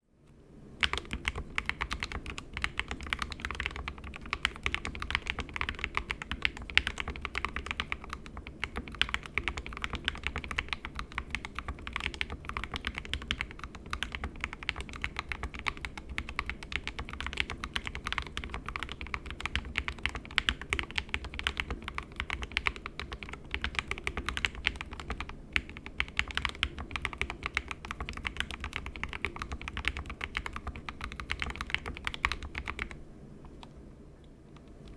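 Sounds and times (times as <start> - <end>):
mechanical keyboard typing: 0.8 - 33.7.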